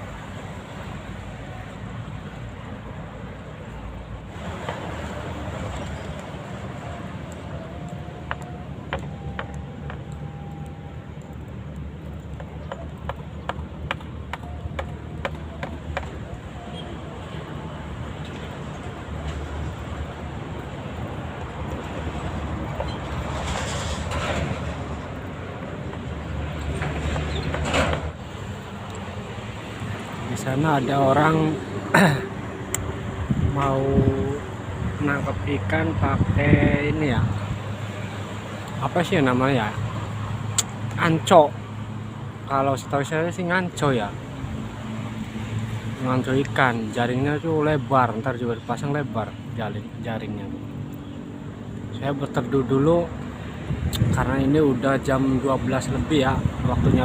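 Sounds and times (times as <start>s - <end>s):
road traffic rumble and hiss: 0.0s - 57.0s
vehicle rushing past: 15.8s - 42.8s.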